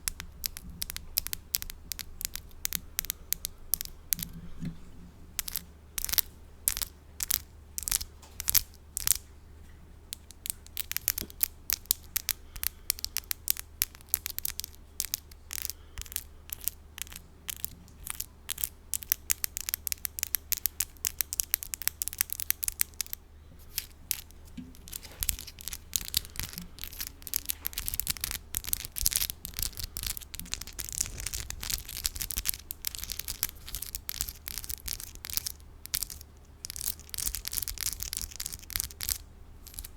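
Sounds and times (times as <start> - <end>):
low mains hum: 0.0 - 39.9
fingernails tapping and scratching: 10.2 - 39.9.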